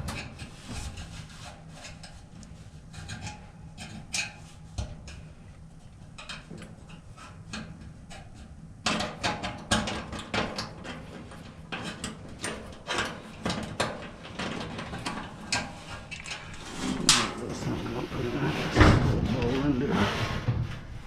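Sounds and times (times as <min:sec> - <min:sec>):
tools and metal parts clattering: 0:08.9 - 0:17.6.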